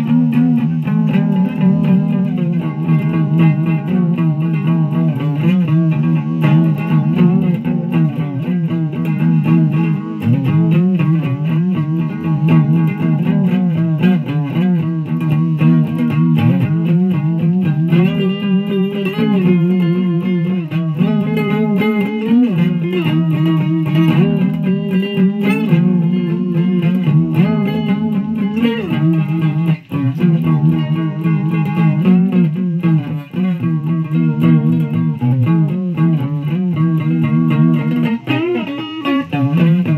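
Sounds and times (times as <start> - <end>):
fuzz electric guitar: 0.0 - 39.9.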